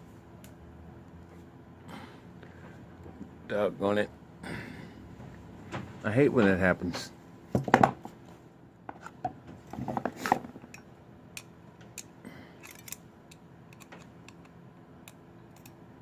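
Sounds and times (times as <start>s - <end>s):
metal parts and tools clicking: 10.7s - 14.5s, 15.1s - 15.8s.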